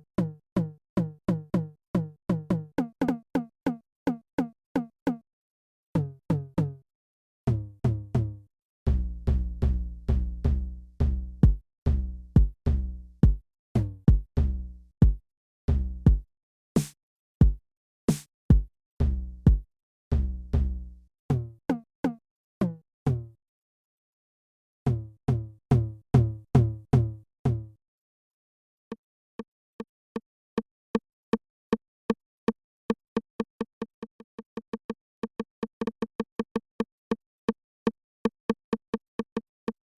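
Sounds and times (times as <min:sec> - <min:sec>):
drum machine beat: 0:12.4 - 0:12.6, 0:13.2 - 0:14.4, 0:15.0 - 0:16.2, 0:16.8 - 0:18.7, 0:19.5 - 0:19.7.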